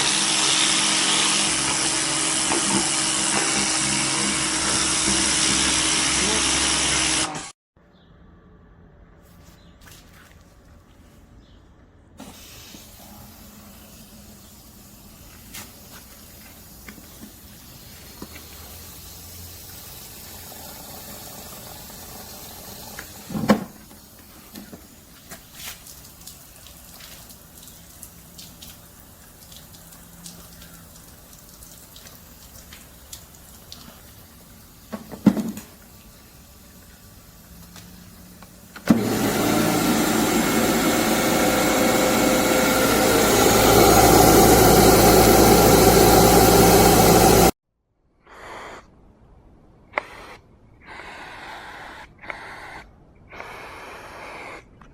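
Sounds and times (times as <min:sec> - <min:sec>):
pressure washer motor running: 0:00.0 - 0:07.5, 0:38.8 - 0:47.5.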